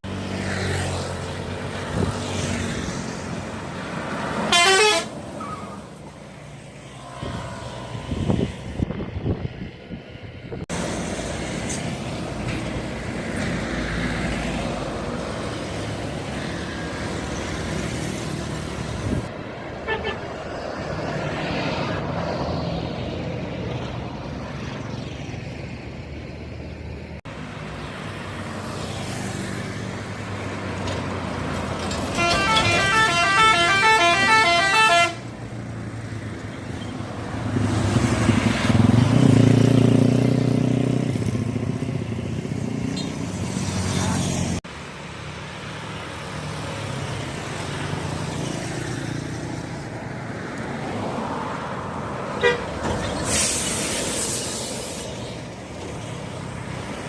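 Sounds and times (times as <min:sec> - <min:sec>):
bus engine rumbling: 0:00.0 - 0:57.0
road traffic: 0:00.0 - 0:57.0
musical bus horn tune: 0:04.4 - 0:05.2, 0:19.8 - 0:20.3, 0:32.0 - 0:35.3, 0:52.4 - 0:52.7.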